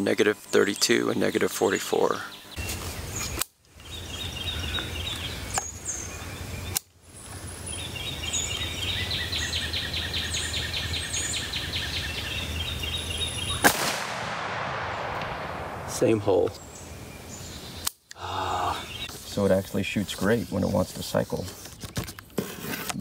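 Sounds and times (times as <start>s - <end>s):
birds chirping: 0.0s - 22.4s
rifle shot: 13.6s - 16.5s.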